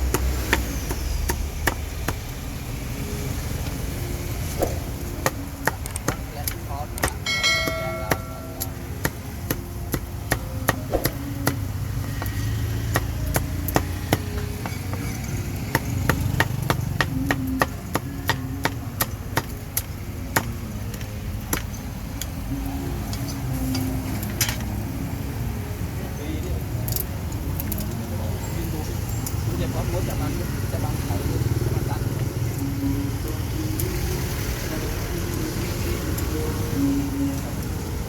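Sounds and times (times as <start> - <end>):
cleaver chopping meat: 0.0 - 2.6, 4.6 - 21.7.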